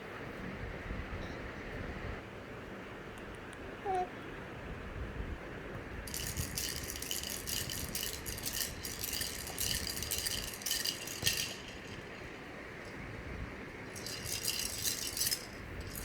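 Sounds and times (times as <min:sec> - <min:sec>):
toy rattle shaking: 0:06.1 - 0:16.0.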